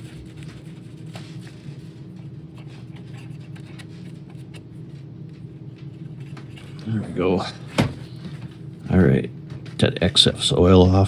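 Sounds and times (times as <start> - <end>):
hands rubbing plastic parts: 0.0 - 6.8
steady low hum: 0.0 - 11.0.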